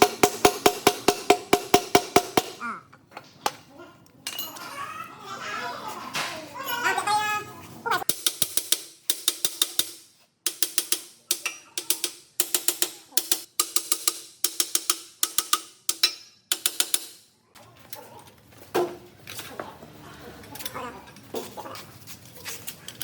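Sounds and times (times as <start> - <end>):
hammer ringing on metal: 0.0 - 2.6.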